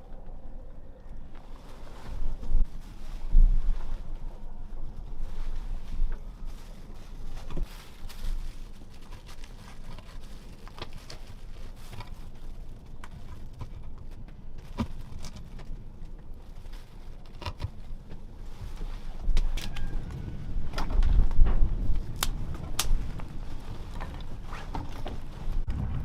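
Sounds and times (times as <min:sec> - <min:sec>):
steady low rumble: 0:00.0 - 0:26.0.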